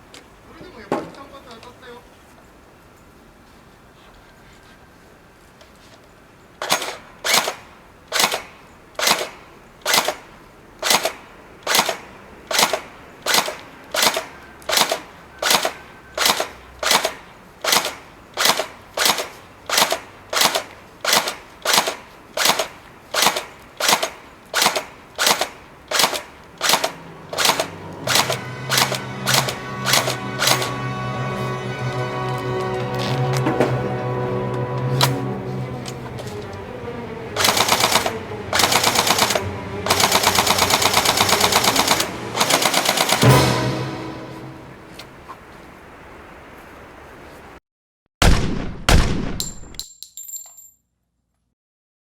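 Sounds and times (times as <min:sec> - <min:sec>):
airsoft shotgun shots cracking: 0:06.6 - 0:30.6, 0:48.2 - 0:49.7
music: 0:27.2 - 0:45.2.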